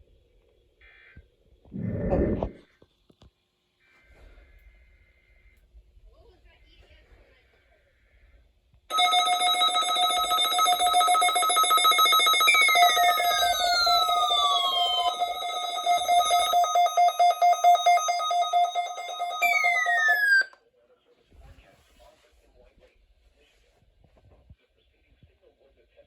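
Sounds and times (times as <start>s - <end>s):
pulsing electronic alert tone: 8.9s - 20.5s.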